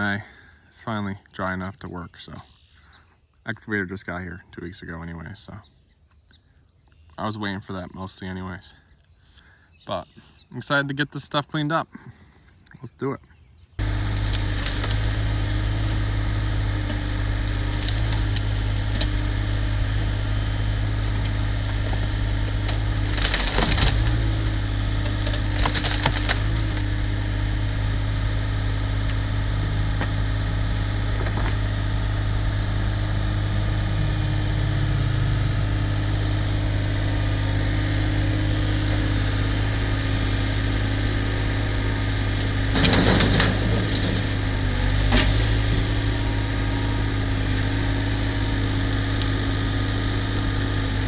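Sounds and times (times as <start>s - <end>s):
diesel engine running: 13.8s - 51.0s
wood cracking and splintering: 13.8s - 51.0s.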